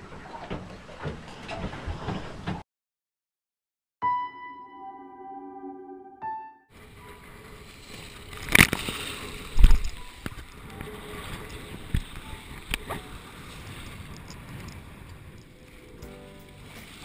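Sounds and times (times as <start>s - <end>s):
water rushing along a hull: 0.0s - 2.6s, 6.8s - 17.0s.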